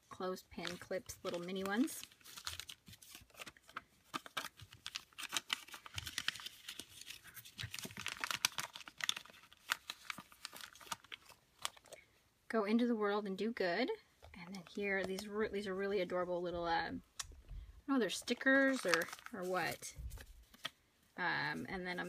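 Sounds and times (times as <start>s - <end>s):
paper and plastic crinkling: 0.5s - 12.0s, 18.2s - 20.8s.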